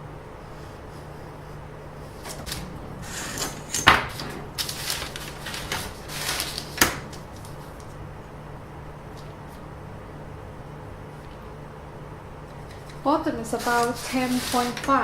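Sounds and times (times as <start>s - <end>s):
faint steady hum: 0.0s - 15.0s
rustling and scraping: 2.0s - 8.0s, 12.5s - 15.0s.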